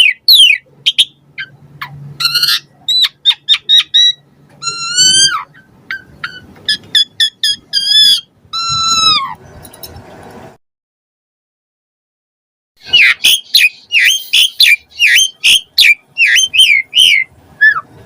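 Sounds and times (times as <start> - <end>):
starling singing whistles and clicks: 12.8 - 17.9
harsh rasping bird notes: 12.8 - 18.0.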